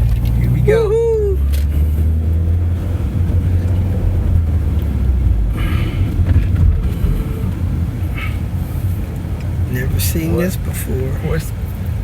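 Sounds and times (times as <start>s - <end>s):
car road and engine rumble: 0.0s - 12.0s.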